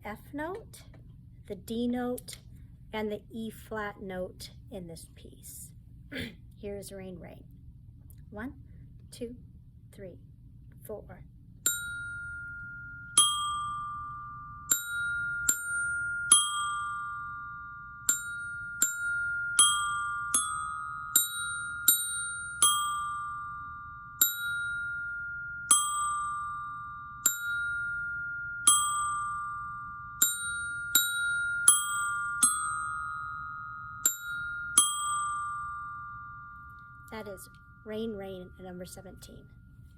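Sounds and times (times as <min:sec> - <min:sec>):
glockenspiel notes: 0:11.7 - 0:39.9.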